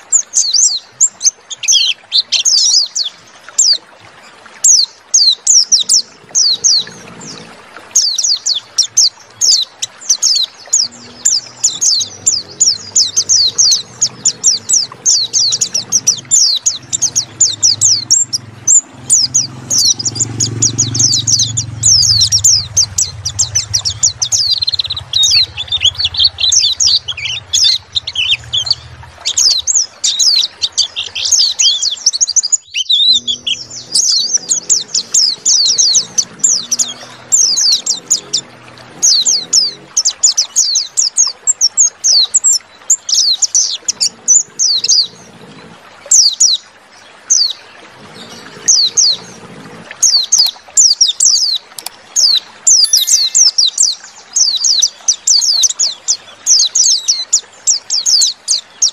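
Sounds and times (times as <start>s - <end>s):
birds twittering song: 0.0s - 58.9s
low hum: 10.8s - 30.5s, 33.1s - 40.0s.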